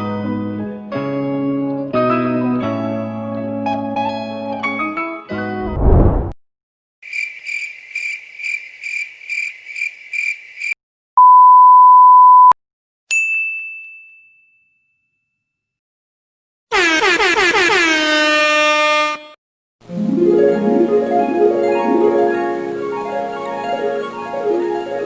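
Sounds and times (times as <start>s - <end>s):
low boom: 5.6s - 6.4s
crickets chirping: 7.1s - 10.8s
bright ding: 13.1s - 15.2s.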